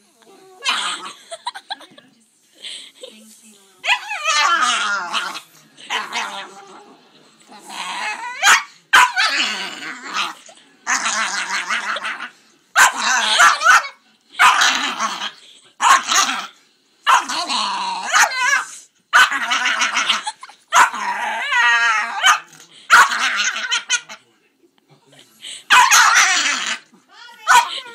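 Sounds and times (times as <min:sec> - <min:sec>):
dog growly barking: 0:00.6 - 0:01.3, 0:03.9 - 0:06.9, 0:07.5 - 0:24.2, 0:25.7 - 0:26.9, 0:27.5 - 0:27.8.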